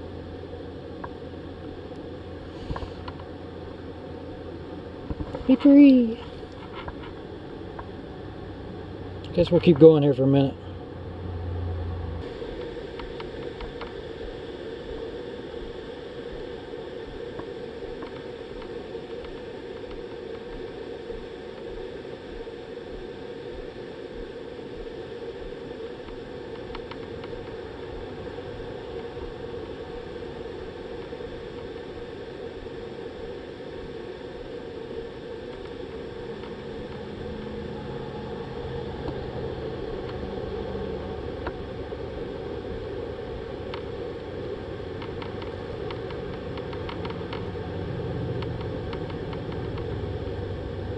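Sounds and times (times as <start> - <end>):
faint clicks: 45.0 - 47.5, 48.4 - 49.9.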